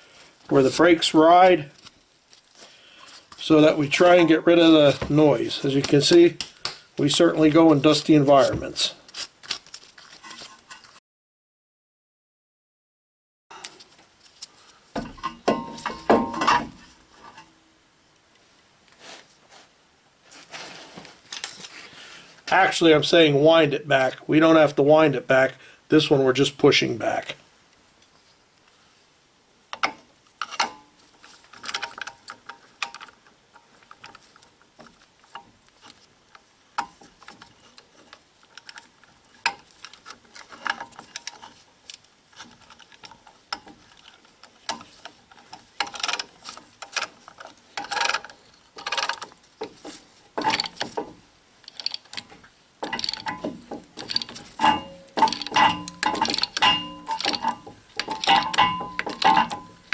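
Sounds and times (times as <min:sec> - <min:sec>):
metal tools clicking and clinking: 0:50.4 - 0:59.9.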